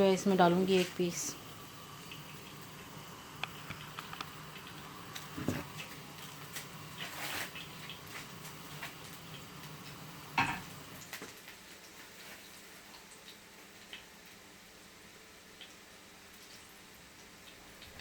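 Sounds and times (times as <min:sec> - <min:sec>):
oil sizzling in a frying pan: 0:00.0 - 0:18.0
knocks against a pan: 0:10.4 - 0:10.7.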